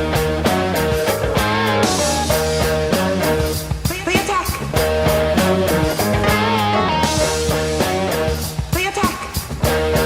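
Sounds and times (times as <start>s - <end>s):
electric guitar notes: 0.0s - 3.8s, 4.8s - 8.5s
steady drum beat: 0.0s - 10.0s.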